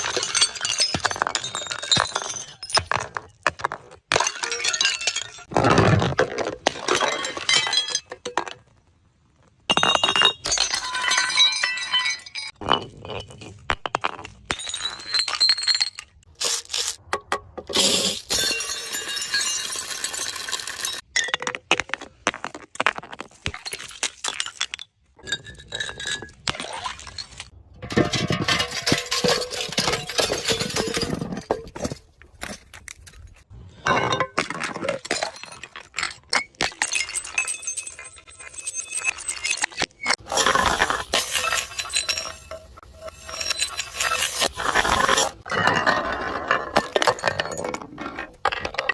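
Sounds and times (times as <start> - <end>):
glass bottles smashing: 0.0 - 3.4, 4.1 - 5.5, 6.6 - 8.5, 9.7 - 13.6, 14.4 - 16.3, 17.7 - 21.5, 23.5 - 32.6, 33.8 - 48.9
glass shards clinking: 9.8 - 13.2, 35.0 - 45.5.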